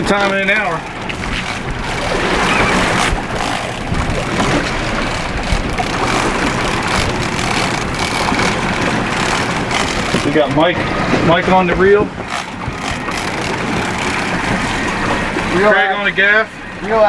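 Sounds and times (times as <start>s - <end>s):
rushing water: 0.0s - 11.3s
wind buffeting microphone: 0.0s - 15.6s
boat engines humming: 0.0s - 17.0s.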